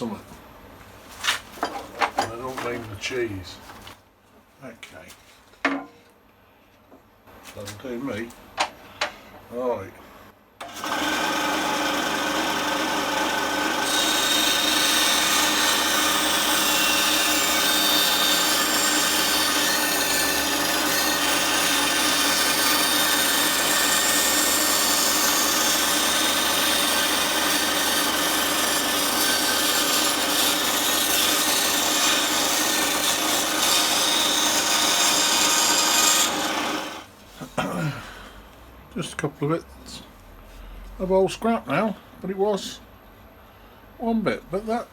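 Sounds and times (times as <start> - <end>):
bandsaw motor hum: 10.6 - 37.1
saw blade cutting wood: 10.6 - 37.1.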